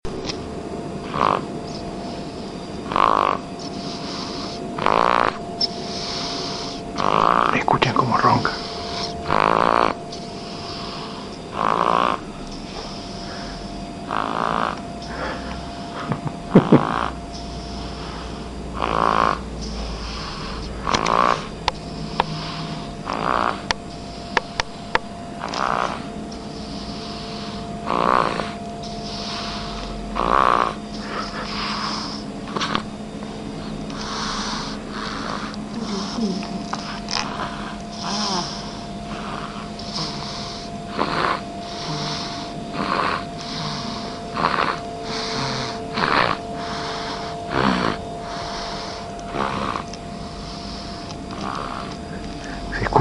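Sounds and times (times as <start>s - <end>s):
fluttering snores: 1.0s - 33.0s, 33.6s - 53.0s
whistling breath: 12.5s - 14.0s, 30.8s - 32.9s.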